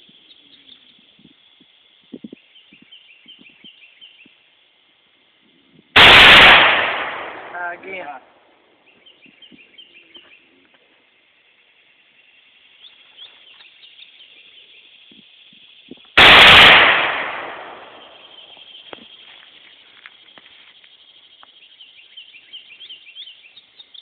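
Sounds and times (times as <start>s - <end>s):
rifle shot: 6.0s - 8.1s, 16.2s - 18.5s.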